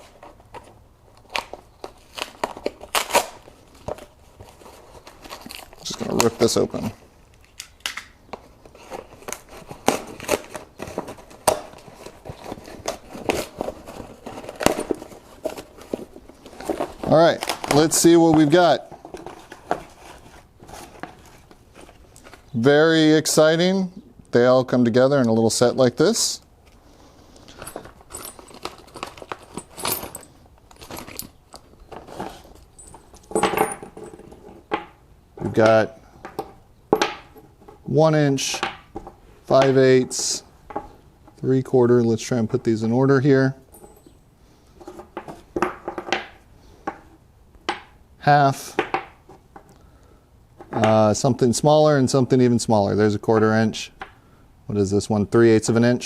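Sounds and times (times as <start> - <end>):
packaging tearing and crinkling: 1.2 - 6.4, 8.9 - 18.4
metal spacers clinking: 27.4 - 37.5, 43.6 - 44.2.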